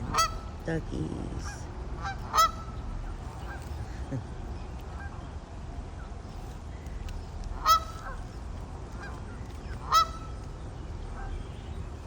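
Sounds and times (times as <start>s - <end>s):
geese honking: 0.0s - 0.6s, 1.4s - 3.6s, 7.6s - 8.2s, 9.8s - 10.3s.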